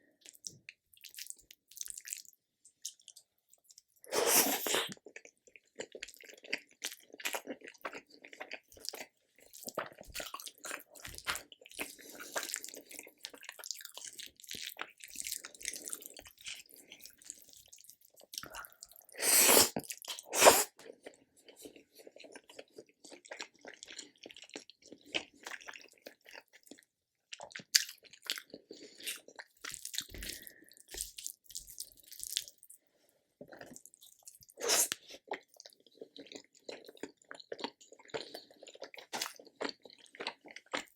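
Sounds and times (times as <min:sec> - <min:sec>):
wet chewing: 0:04.0 - 0:32.6.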